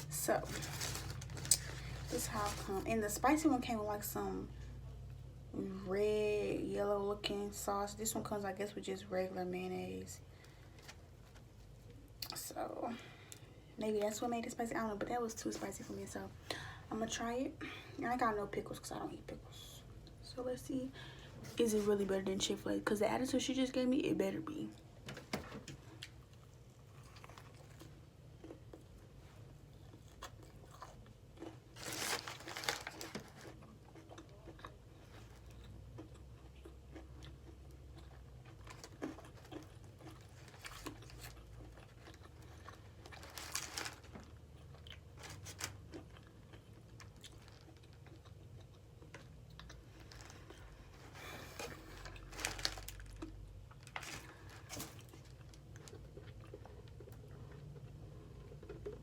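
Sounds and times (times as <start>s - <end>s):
person chewing: 25.8s - 32.0s, 32.9s - 43.4s, 44.6s - 52.3s, 53.0s - 59.0s.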